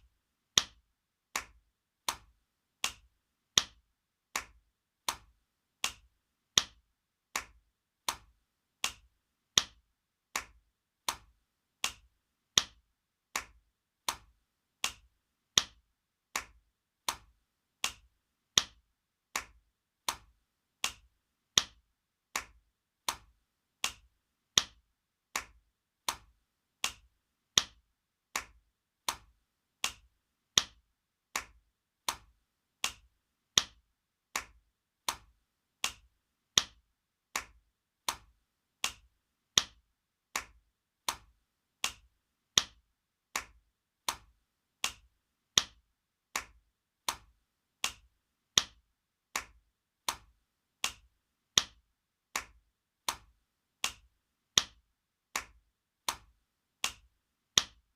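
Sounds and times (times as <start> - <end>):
sharp slaps: 4.4 - 6.8, 10.4 - 12.8.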